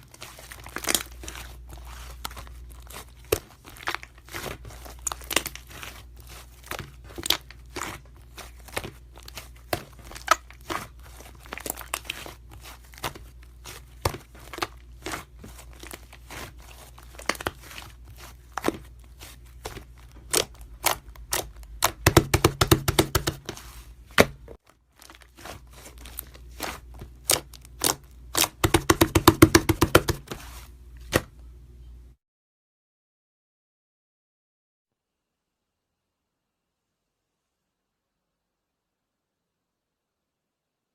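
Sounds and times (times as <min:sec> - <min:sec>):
slime squishing by hand: 0:00.0 - 0:31.4.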